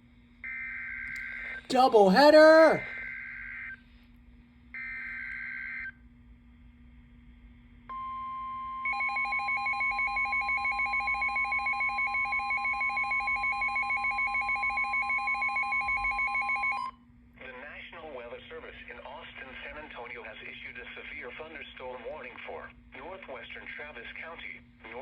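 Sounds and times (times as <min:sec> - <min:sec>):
steady warning alarm tone: 0:07.9 - 0:16.9.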